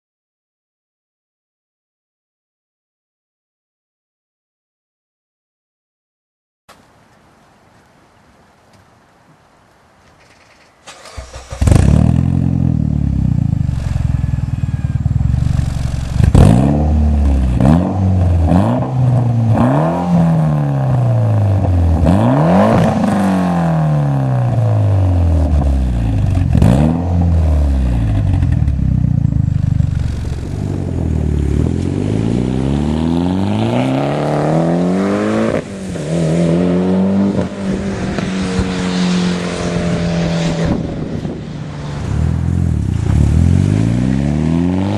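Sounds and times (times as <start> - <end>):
car engine starting and revving: 10.8 - 44.9.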